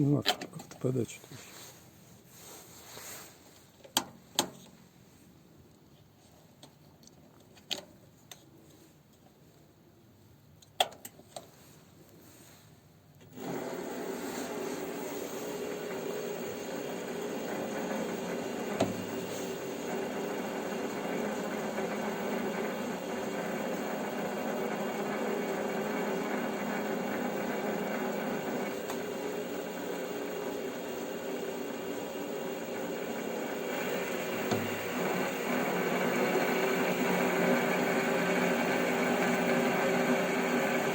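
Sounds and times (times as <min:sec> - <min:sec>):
lathe motor whirring hum: 0:13.3 - 0:40.9.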